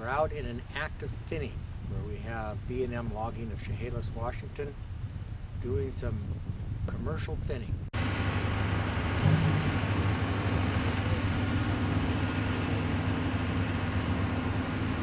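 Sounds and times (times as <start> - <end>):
heavy machinery engine running: 8.0 - 15.0.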